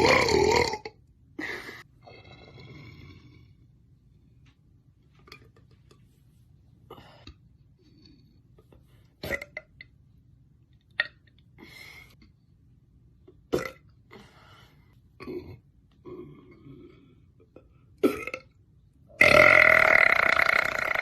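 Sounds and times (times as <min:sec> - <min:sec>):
woman burping: 0:00.0 - 0:01.0, 0:13.5 - 0:14.0, 0:18.0 - 0:18.5.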